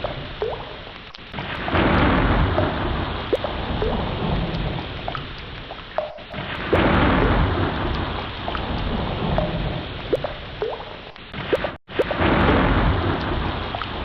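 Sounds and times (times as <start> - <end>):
dripping water plinks: 0.0 - 12.2
heavy rain: 0.0 - 14.0
loud thunder peal: 1.4 - 5.0, 6.4 - 10.0, 11.4 - 14.0
low rumbling thunder: 1.4 - 5.2, 6.3 - 10.2, 11.4 - 14.0.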